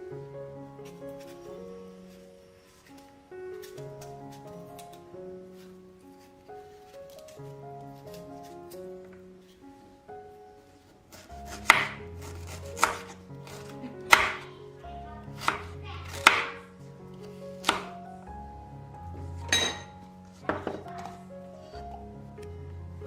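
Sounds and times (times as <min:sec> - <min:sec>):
background music: 0:00.0 - 0:23.0
knife chopping on cutting board: 0:11.1 - 0:14.4, 0:15.4 - 0:16.6, 0:17.6 - 0:17.9.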